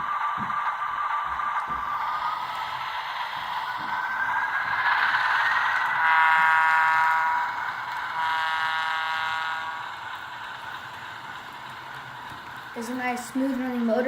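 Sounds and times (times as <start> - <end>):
model locomotive engine sound: 0.0 - 14.0
locomotive horn blasts: 8.2 - 9.8.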